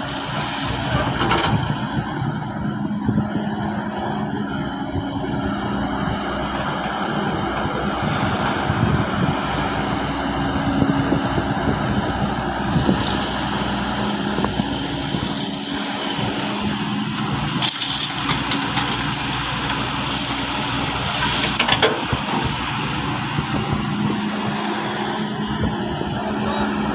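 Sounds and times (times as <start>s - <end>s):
excavator engine humming: 0.0s - 26.9s
loud high hiss: 12.5s - 21.7s.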